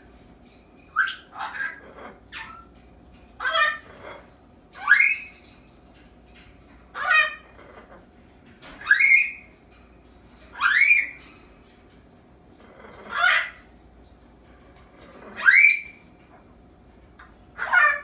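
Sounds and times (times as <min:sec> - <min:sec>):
parrot squeaky rising calls: 0:04.8 - 0:05.3, 0:08.8 - 0:09.4, 0:10.6 - 0:11.2, 0:15.3 - 0:16.0.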